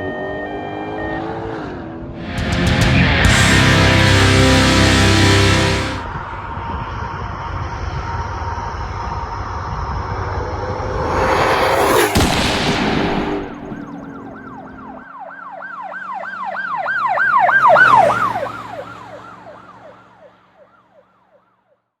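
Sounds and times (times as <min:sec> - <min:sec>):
emergency siren yelping: 0:00.0 - 0:01.6, 0:13.4 - 0:21.4
loud rush with falling tone: 0:02.2 - 0:15.0.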